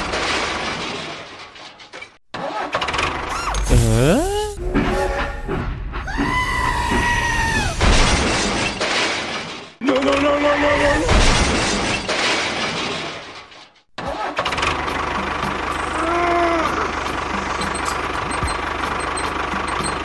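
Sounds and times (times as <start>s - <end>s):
motor running with low beat: 15.5s - 20.0s.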